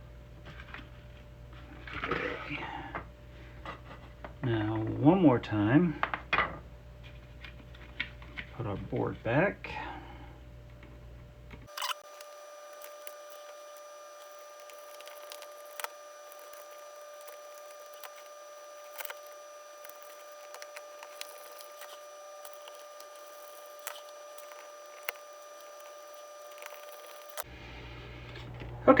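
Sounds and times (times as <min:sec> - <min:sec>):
faint high whine: 0:11.6 - 0:29.0
small plastic parts clicking: 0:11.7 - 0:27.5.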